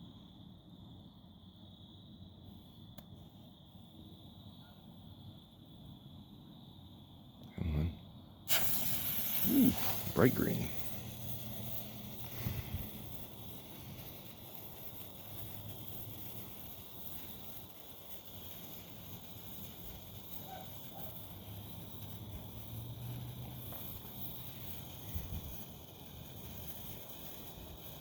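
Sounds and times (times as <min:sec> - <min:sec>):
sparkler fizzing: 0:08.4 - 0:28.0.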